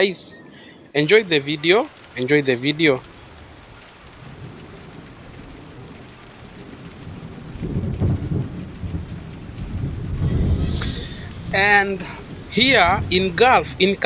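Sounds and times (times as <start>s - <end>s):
heavy rain falling: 0.0s - 14.0s
low rumble: 9.4s - 14.0s.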